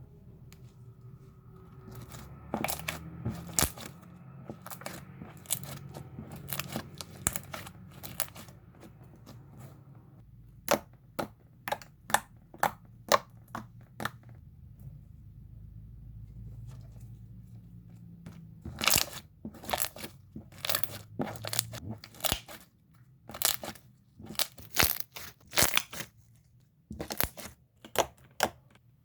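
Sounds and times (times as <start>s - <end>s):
slime squeezed crackling and popping: 1.9s - 8.5s, 18.7s - 22.7s, 23.3s - 26.1s, 26.9s - 28.5s.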